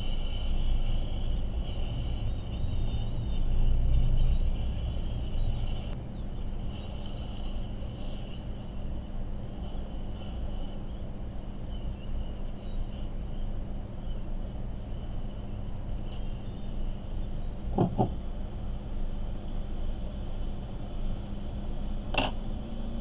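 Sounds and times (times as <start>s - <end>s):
faint bird chirps: 0.0s - 18.4s
low electrical hum: 0.0s - 23.0s.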